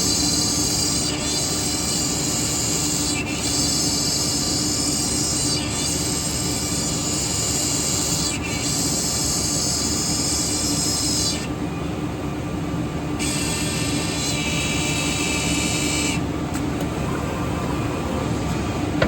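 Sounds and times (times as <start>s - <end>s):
drilling machine hum: 0.0s - 12.2s, 13.0s - 19.0s
high-pitched machine whine: 16.9s - 19.0s.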